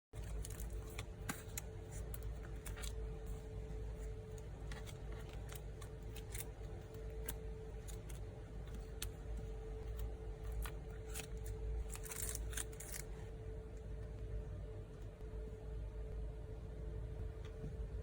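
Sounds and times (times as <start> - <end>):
cards and packing crinkling: 0.2 - 13.3
low hum: 0.2 - 18.0.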